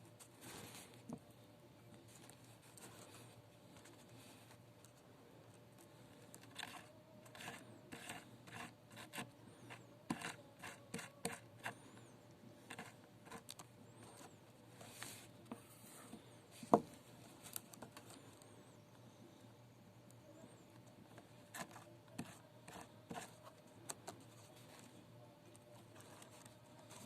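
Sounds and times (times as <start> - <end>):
scraping and rubbing on wire: 6.2 - 16.3.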